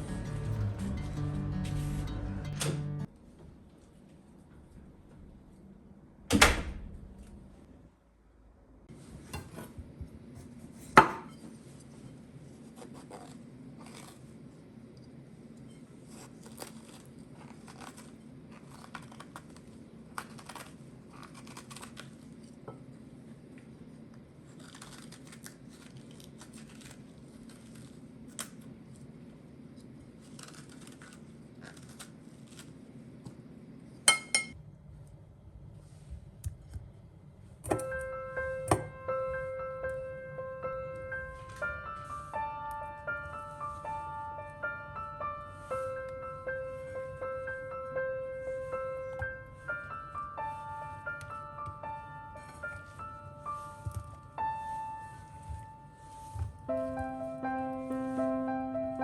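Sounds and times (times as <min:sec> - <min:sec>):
soft piano music: 0:00.0 - 0:03.1, 0:37.7 - 0:59.0
dishes and utensils clinking: 0:34.1 - 0:34.6.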